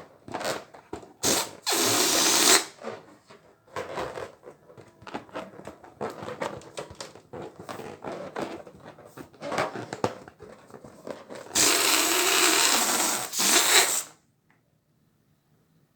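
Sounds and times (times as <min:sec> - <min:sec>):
water balloons popping and squishing: 0:01.2 - 0:02.8, 0:11.5 - 0:14.1.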